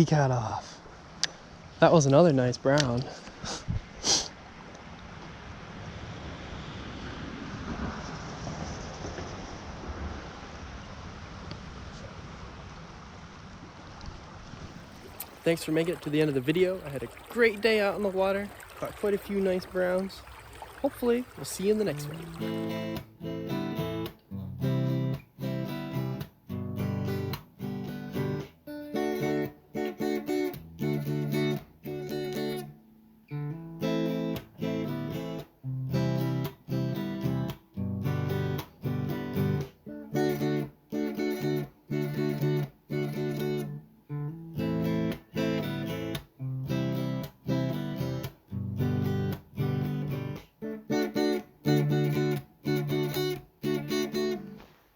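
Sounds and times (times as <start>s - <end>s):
acoustic guitar strumming: 21.0s - 54.8s.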